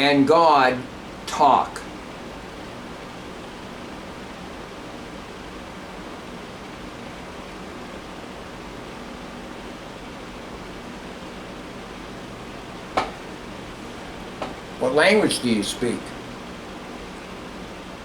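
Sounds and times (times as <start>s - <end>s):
steady hiss: 0.0s - 18.0s.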